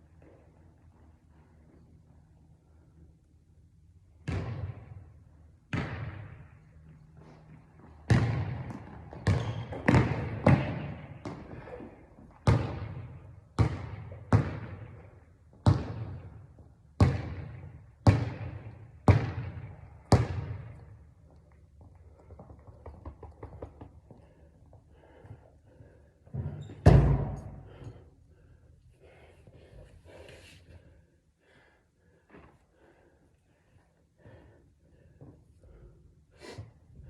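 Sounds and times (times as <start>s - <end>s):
basketball bouncing on a court: 4.2s - 6.6s, 7.8s - 21.0s.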